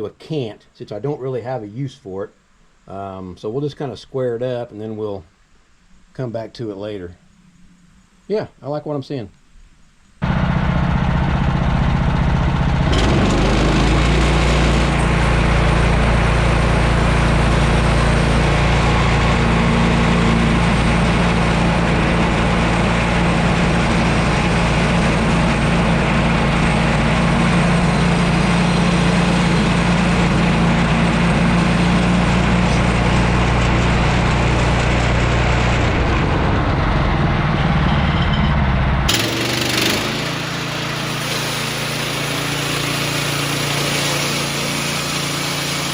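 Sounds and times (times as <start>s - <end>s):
gas engine running under load: 10.2s - 45.9s
band blade sawing a log: 39.1s - 45.9s.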